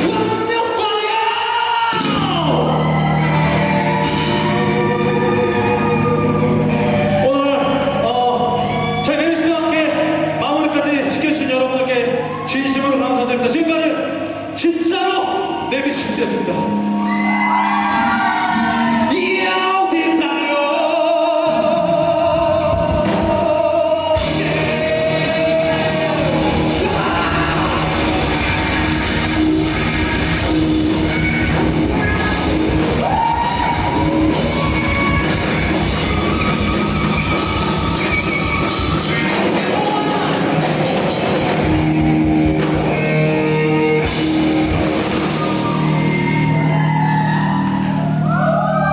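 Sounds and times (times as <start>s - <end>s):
rock band playing live: 0.0s - 48.9s
person singing: 17.9s - 30.2s.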